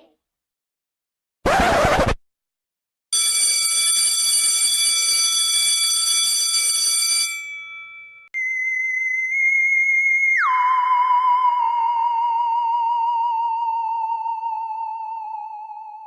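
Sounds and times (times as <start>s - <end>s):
electronic alarm ringing: 3.1s - 8.4s
wavering whistle-like tone: 8.4s - 16.0s.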